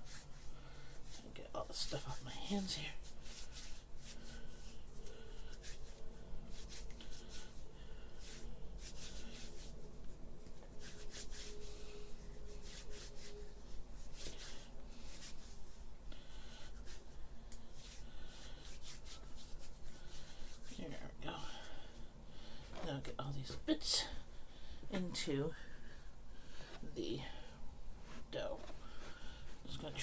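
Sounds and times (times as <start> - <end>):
hands rubbing dough off fingers: 2.6 - 15.8, 16.5 - 20.8.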